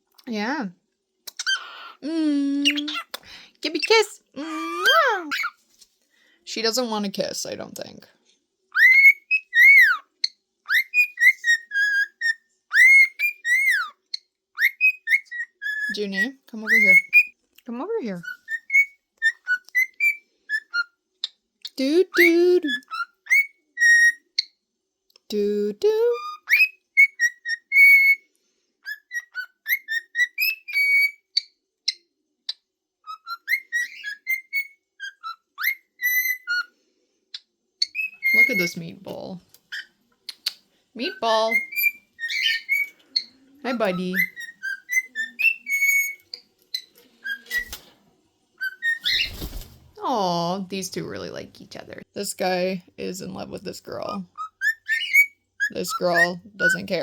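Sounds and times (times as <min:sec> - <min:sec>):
cockatiel whistling: 0:08.7 - 0:10.0, 0:10.7 - 0:13.9, 0:14.6 - 0:16.0, 0:16.7 - 0:17.3, 0:18.3 - 0:20.9, 0:22.2 - 0:24.4, 0:26.2 - 0:28.2, 0:28.8 - 0:31.4, 0:33.1 - 0:36.7, 0:37.8 - 0:38.8, 0:41.5 - 0:43.3, 0:44.1 - 0:47.8, 0:48.6 - 0:49.4, 0:54.4 - 0:56.9.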